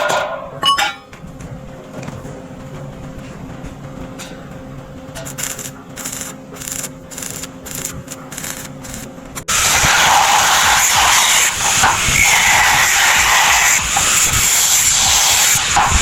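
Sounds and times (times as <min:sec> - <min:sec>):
loud steady rushing noise: 0:00.0 - 0:16.0.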